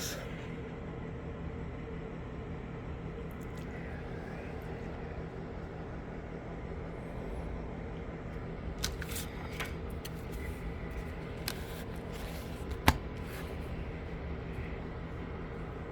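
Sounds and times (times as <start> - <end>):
steady low hum: 0.0 - 15.9
plastic case clicking and rustling: 11.4 - 13.6.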